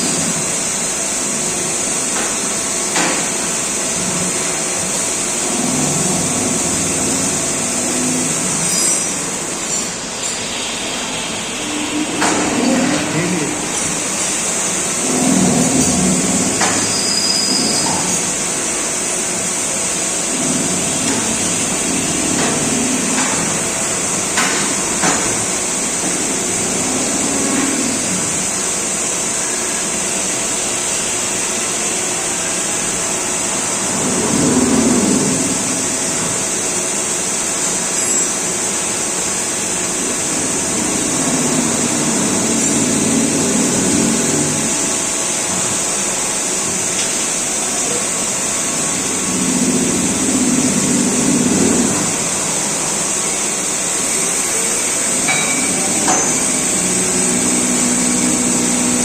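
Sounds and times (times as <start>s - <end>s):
low machine rumble: 4.0s - 16.7s.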